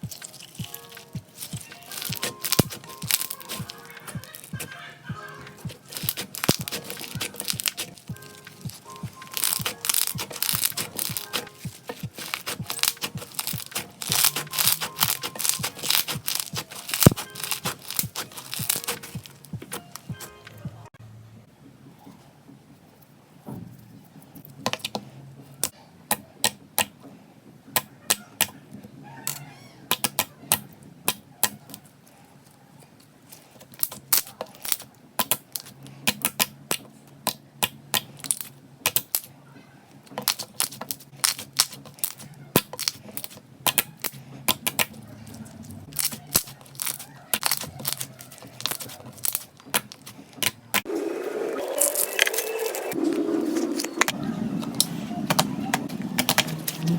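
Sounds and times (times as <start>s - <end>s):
slime popping and clicking: 5.6s - 20.2s.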